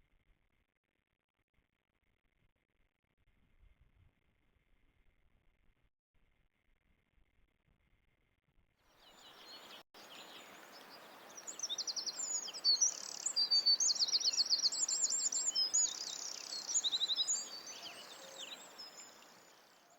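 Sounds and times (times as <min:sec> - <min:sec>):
songbirds trilling and chirping: 0:09.0 - 0:19.9.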